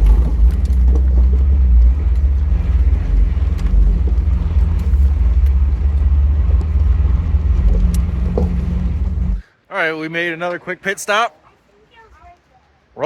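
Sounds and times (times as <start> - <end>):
low rumble of engine and tyres: 0.0 - 9.4
small knocks and rattles: 0.0 - 9.4.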